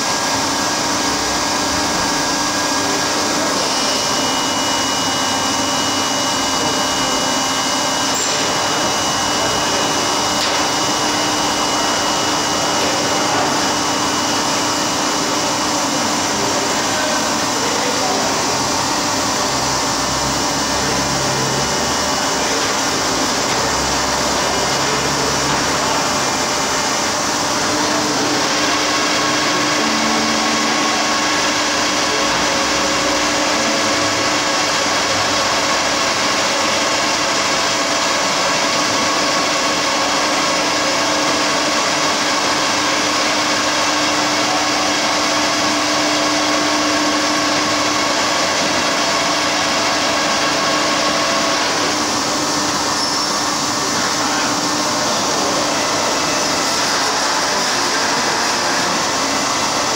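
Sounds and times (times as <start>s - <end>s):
higher whine: 0.0s - 36.8s
machine steady mechanical whir: 0.0s - 59.9s.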